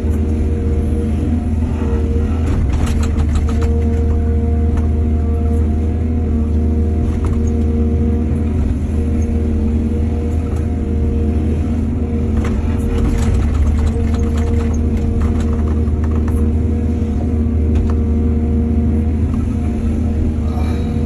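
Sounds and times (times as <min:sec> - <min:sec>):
excavator diesel engine running: 0:00.0 - 0:21.0
clicks and rattles: 0:02.5 - 0:04.2, 0:12.4 - 0:16.5.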